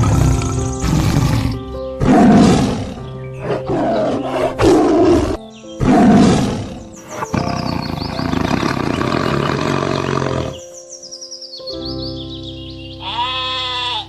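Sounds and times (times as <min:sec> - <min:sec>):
background music: 0:00.0 - 0:14.0.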